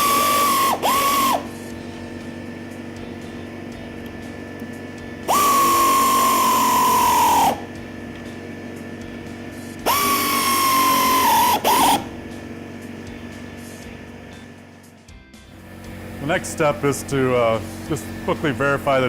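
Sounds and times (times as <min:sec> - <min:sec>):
air ratchet whining: 0:00.0 - 0:14.5.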